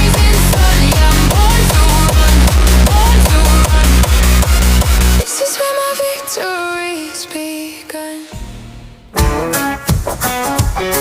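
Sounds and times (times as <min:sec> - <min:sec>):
electronic dance music: 0:00.0 - 0:07.6.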